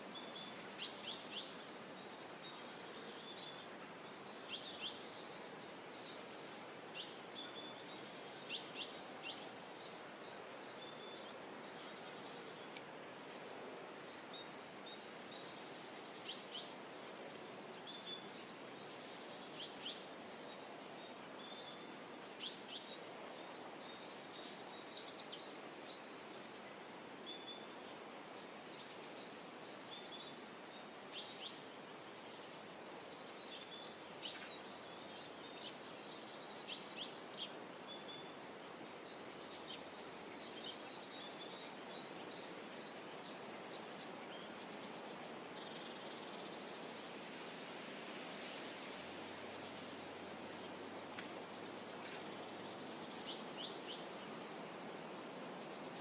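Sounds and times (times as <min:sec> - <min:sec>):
outdoor background hiss: 0:00.0 - 0:56.0
songbirds chirping: 0:00.0 - 0:56.0.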